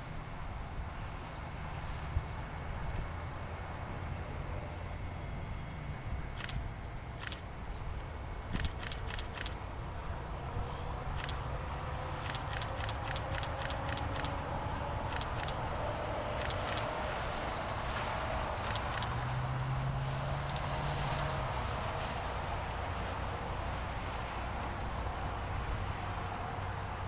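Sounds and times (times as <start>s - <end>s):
camera shutter firing: 6.4s - 7.5s, 8.5s - 9.6s, 11.1s - 11.5s, 12.2s - 14.4s, 15.1s - 15.6s, 16.4s - 17.0s, 18.6s - 19.2s.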